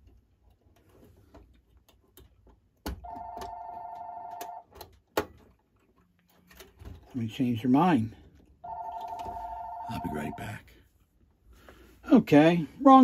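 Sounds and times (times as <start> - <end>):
telephone ringing: 3.0 - 4.7, 8.6 - 10.6.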